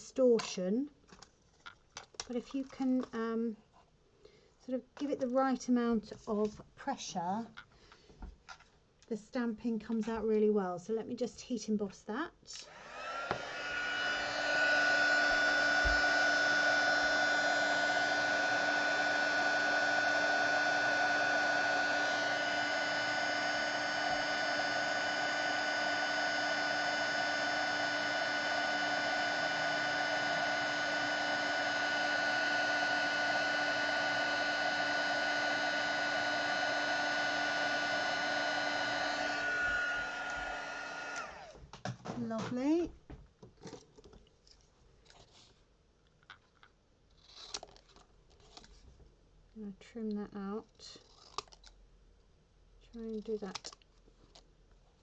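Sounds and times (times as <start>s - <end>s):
heat gun fan whine: 12.6s - 42.8s.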